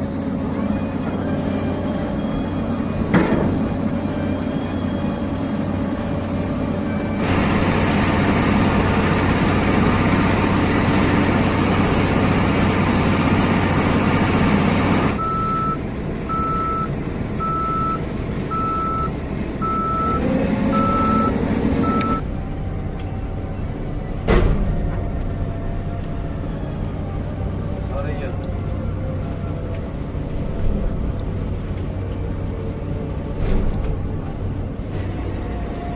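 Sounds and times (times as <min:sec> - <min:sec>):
heavy machinery running: 0:00.0 - 0:27.1
warning alarm beeping: 0:15.2 - 0:22.2.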